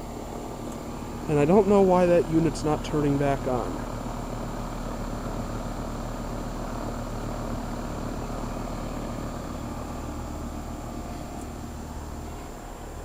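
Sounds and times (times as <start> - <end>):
condenser fan whooshing: 0.0 - 13.0
low compressor hum: 0.0 - 13.0.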